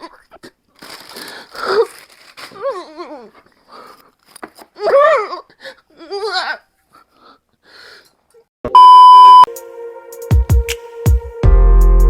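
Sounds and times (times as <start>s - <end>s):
loud electronic beep: 8.7s - 9.5s.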